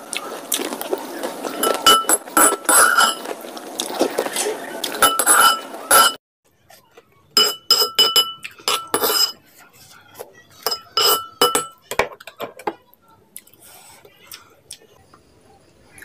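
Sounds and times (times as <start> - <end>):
cutlery clinking against dishware: 1.5 - 3.3, 4.2 - 6.2, 7.4 - 9.4, 10.6 - 12.8.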